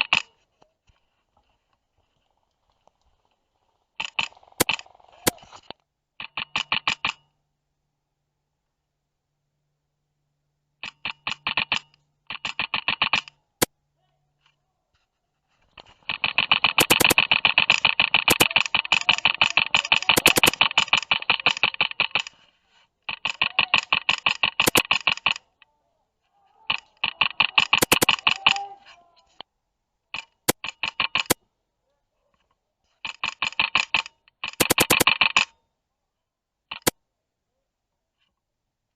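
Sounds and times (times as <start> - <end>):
airsoft guns firing sharp cracks: 16.0 - 22.3, 23.1 - 25.4, 26.7 - 28.7, 33.2 - 35.5.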